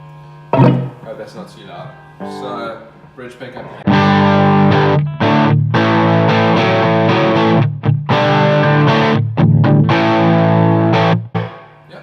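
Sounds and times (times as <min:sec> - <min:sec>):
overdriven electric guitar chords: 0:00.6 - 0:01.0, 0:03.9 - 0:11.8.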